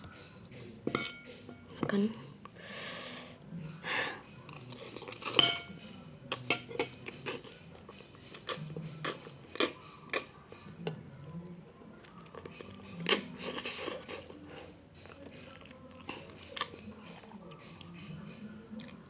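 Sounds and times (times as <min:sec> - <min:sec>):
cutlery scraping a dish: 0:00.0 - 0:01.7, 0:04.2 - 0:10.8.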